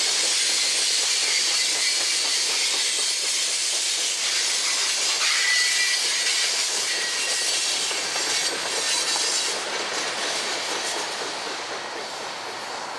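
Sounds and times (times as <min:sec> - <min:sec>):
train cars rolling on rails: 0:00.0 - 0:12.9
wheel squeal: 0:04.4 - 0:11.1.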